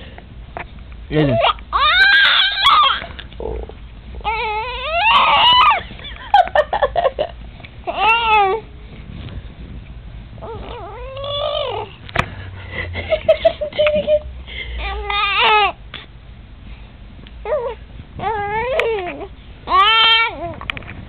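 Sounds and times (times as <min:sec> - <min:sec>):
baby wailing: 0:01.4 - 0:03.2, 0:04.2 - 0:05.8, 0:07.9 - 0:08.6, 0:10.4 - 0:11.9, 0:14.8 - 0:15.8, 0:17.4 - 0:20.6.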